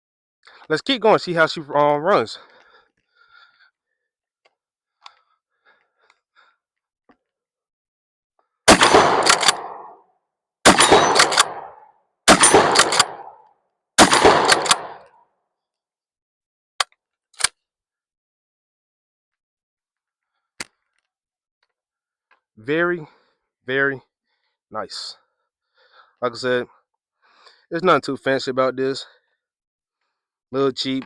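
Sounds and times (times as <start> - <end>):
shotgun blasts with echo: 8.7 - 10.0, 10.7 - 13.4, 14.0 - 15.1.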